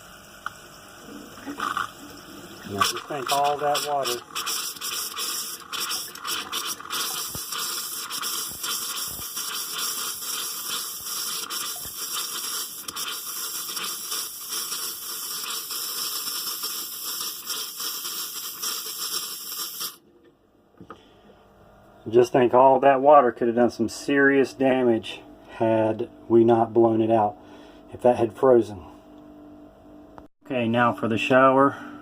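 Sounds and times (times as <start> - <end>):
compressed air and water spitting: 2.7 - 20.0.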